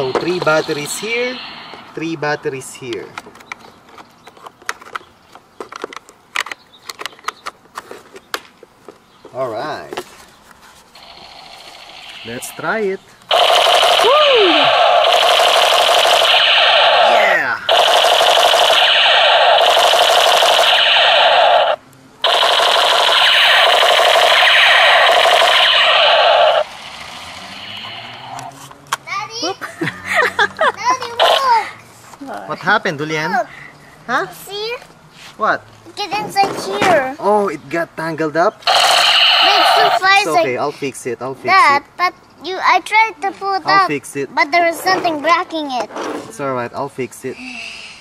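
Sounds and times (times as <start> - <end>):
toy gun electronic rapid-fire: 0.0 - 1.6, 11.0 - 28.4, 31.2 - 31.5, 38.6 - 40.1.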